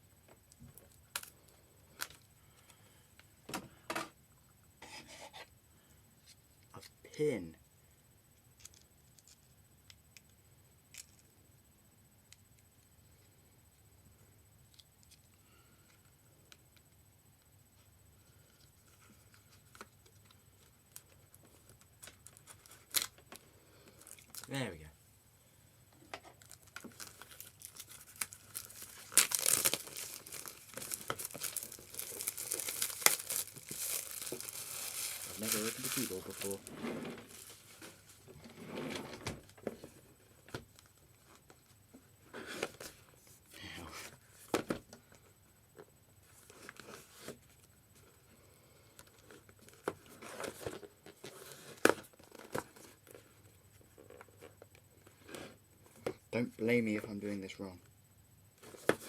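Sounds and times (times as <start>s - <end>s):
packaging crinkling and tearing: 21.0s - 23.2s, 24.0s - 24.6s, 26.4s - 38.1s.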